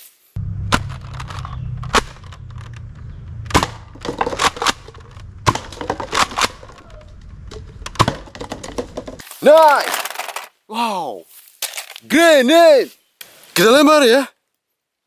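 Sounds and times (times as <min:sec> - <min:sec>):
steady low hum: 0:00.4 - 0:08.0.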